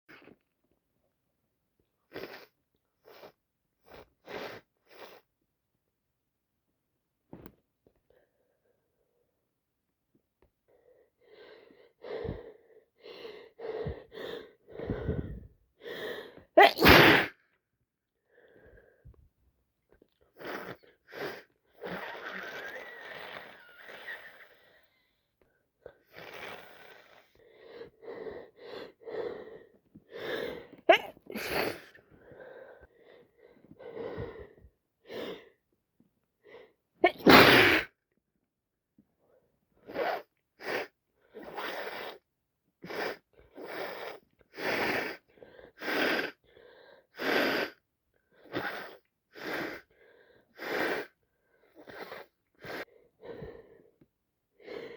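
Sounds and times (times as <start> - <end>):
sniffly breaths: 10.7 - 16.5, 39.8 - 54.0
person sneezing: 16.6 - 17.4, 30.9 - 32.0, 37.0 - 37.9.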